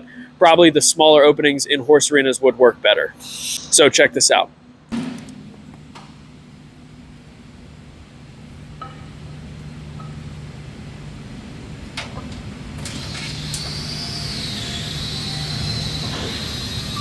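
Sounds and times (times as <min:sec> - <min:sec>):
high wavering whine: 0:03.2 - 0:04.1, 0:12.5 - 0:17.0.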